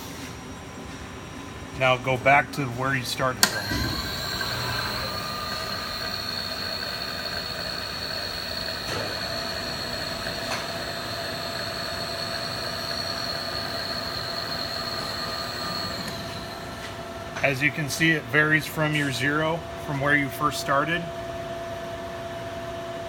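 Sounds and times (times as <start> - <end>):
milling machine table whine: 3.2 - 17.9.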